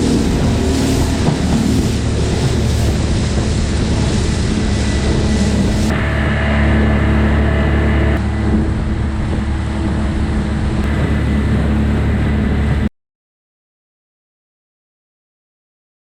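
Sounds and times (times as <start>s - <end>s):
boat motor running: 0.0s - 12.9s
rushing water noise: 0.0s - 12.9s.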